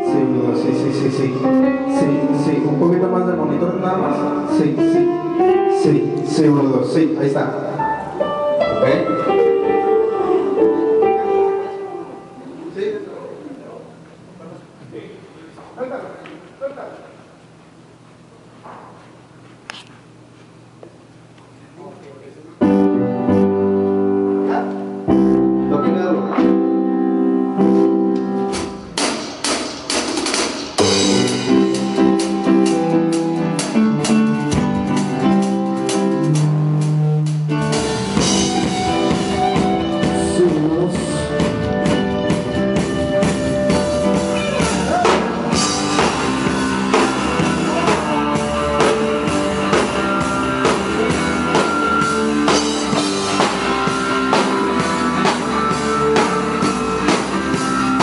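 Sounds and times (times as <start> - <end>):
guitar: 0.0 - 12.7, 22.6 - 58.0
keyboard chords: 0.0 - 12.8, 22.6 - 58.0
drum kit: 26.2 - 58.0.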